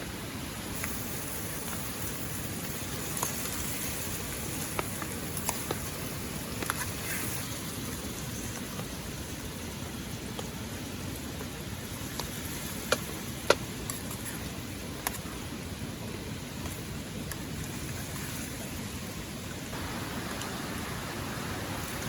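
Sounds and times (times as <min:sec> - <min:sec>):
steady light rain: 0:00.0 - 0:22.0
raindrops ticking: 0:00.8 - 0:09.0.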